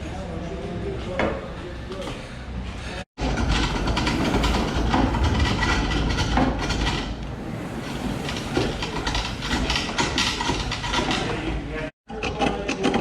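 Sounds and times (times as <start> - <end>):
pole lathe treadle clattering: 3.2 - 13.0.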